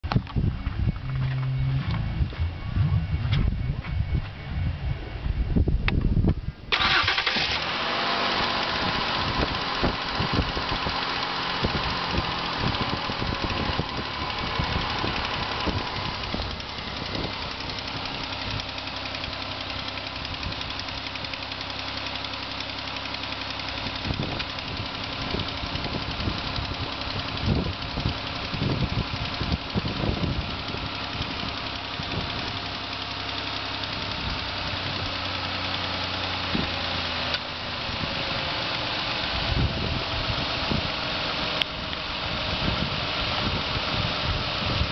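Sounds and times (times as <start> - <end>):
car engine starting and idling: 0.0 - 44.9
low thumps: 0.1 - 6.5.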